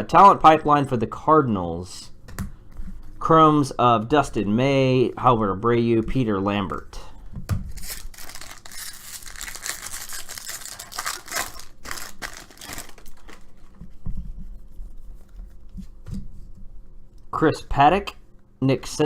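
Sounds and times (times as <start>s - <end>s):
foil wrapper tearing and crinkling: 7.7s - 13.5s
cards rustling and clicking: 7.7s - 13.8s.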